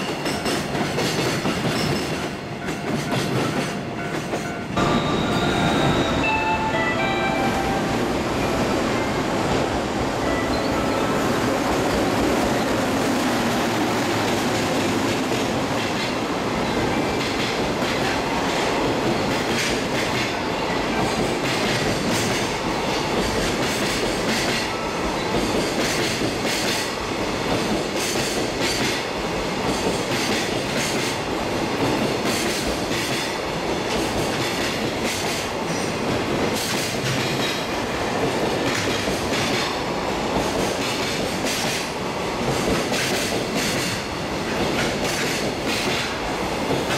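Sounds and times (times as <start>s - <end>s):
train wheels clacking over rail joints: 0.0s - 4.6s, 17.1s - 31.2s, 31.8s - 46.9s.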